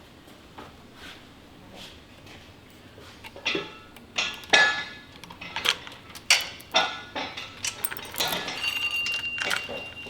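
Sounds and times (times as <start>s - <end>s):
metal tools knocking together: 3.3s - 10.0s.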